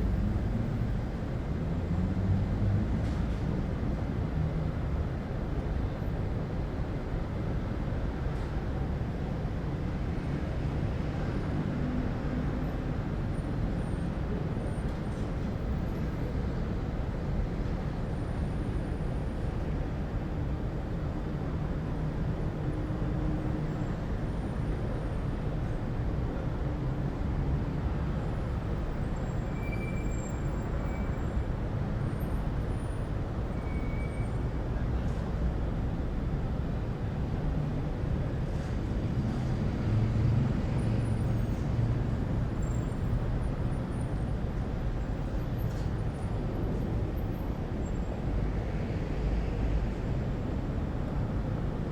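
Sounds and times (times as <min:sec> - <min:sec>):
distant road traffic rumble: 0:22.1 - 0:51.9.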